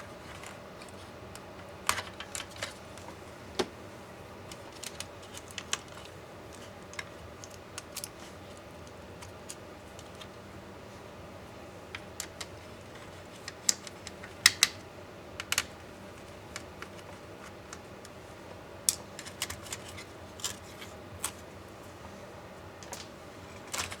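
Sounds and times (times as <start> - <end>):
clicks and taps of tools and parts: 11.9 - 14.8, 15.4 - 15.8, 18.9 - 20.6, 22.8 - 24.0.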